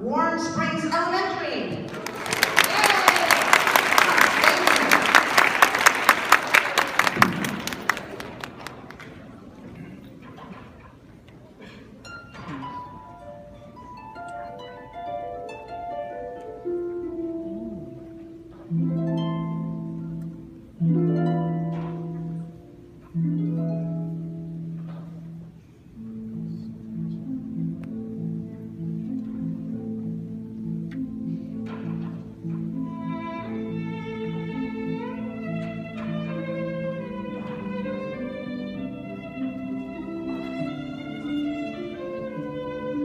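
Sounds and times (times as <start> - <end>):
audience applauding: 1.9 - 10.1
orchestra playing slow chords: 2.0 - 43.0.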